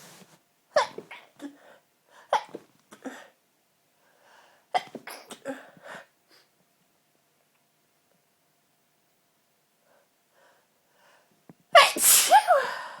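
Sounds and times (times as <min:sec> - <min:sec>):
woman sneezing: 0:11.8 - 0:13.0.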